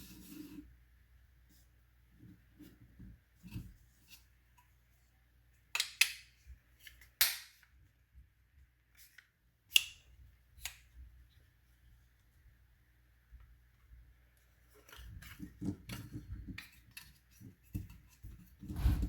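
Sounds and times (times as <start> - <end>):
plastic clicks and snaps: 5.8 - 7.7.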